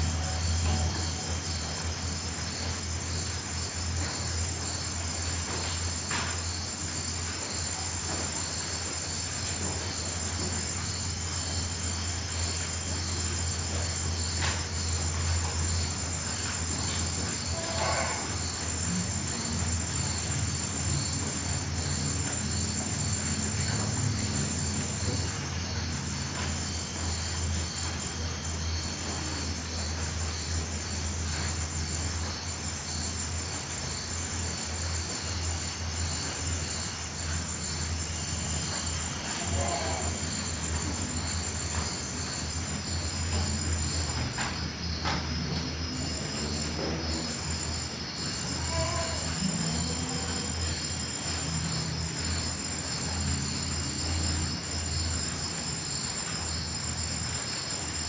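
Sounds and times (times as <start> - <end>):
continuous low rumble: 0.0 - 58.0
crickets chirping: 0.0 - 58.0.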